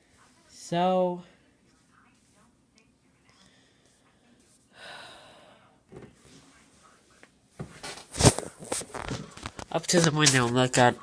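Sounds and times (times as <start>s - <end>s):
person breathing out: 4.8s - 5.6s.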